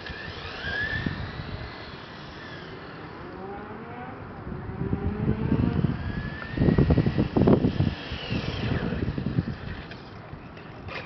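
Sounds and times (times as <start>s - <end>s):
toy car motor whine: 0.0s - 3.5s, 5.5s - 10.2s.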